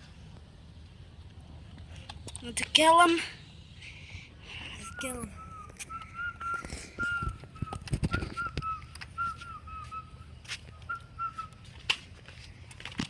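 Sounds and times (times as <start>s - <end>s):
high whistled notes: 4.8s - 11.6s.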